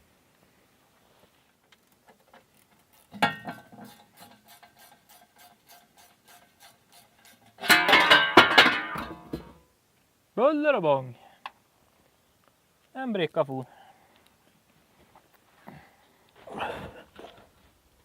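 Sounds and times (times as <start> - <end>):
ratchet wrench clicking: 3.9 - 7.4.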